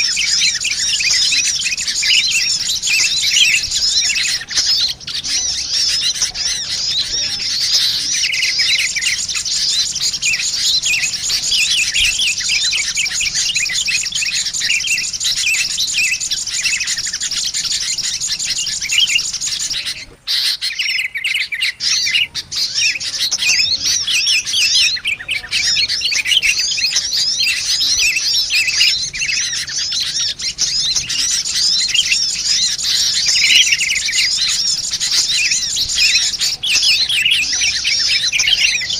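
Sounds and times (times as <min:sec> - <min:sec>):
birds chirping rapidly: 0:00.0 - 0:38.9.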